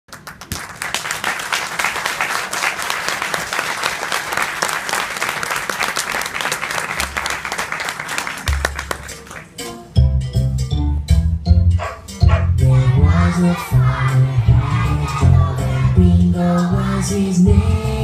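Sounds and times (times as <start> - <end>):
crowd applauding: 0.1 - 9.6.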